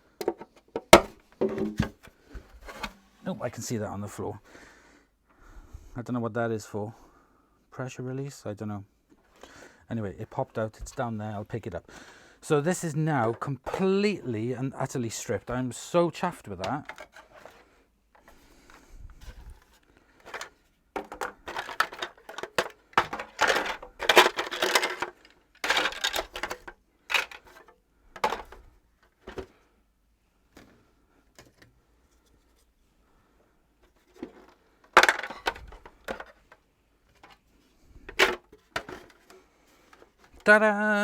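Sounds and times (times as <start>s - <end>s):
plastic parts clattering: 0.1s - 3.4s, 16.3s - 29.6s, 30.5s - 32.7s, 33.8s - 40.6s.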